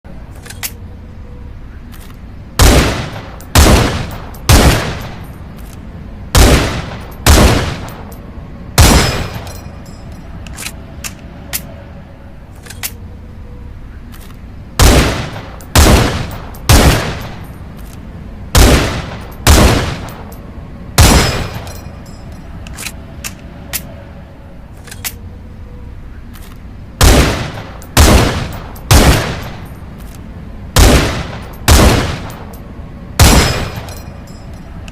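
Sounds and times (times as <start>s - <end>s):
rifle shots with echo: 2.6s - 5.2s, 6.3s - 8.1s, 8.8s - 9.5s, 14.8s - 17.4s, 18.5s - 20.3s, 21.0s - 21.7s, 27.0s - 29.6s, 30.8s - 32.5s, 33.2s - 33.9s.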